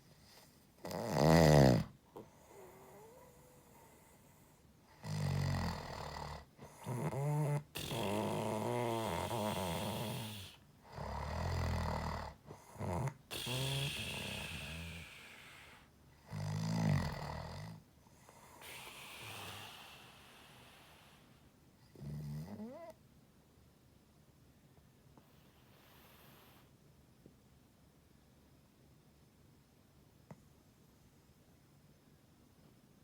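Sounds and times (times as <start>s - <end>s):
quiet breaths: 0.0s - 23.0s, 24.8s - 27.0s
person snoring: 0.8s - 1.9s, 5.0s - 17.8s, 18.6s - 22.8s.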